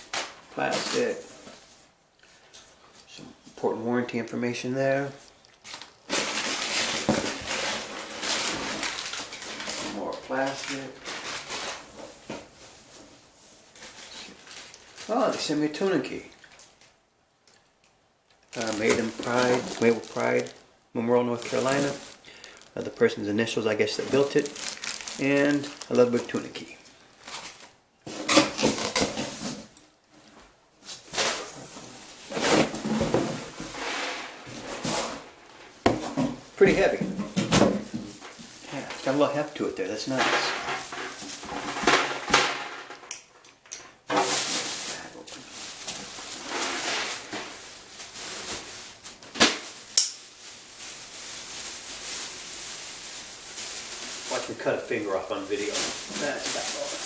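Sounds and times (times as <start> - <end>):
packaging rustling: 5.6 - 13.0, 13.7 - 15.5, 18.3 - 29.8, 44.1 - 57.0.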